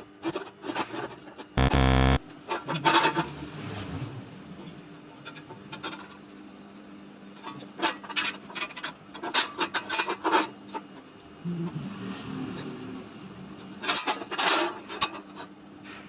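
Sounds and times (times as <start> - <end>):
low hum: 1.6 - 2.2.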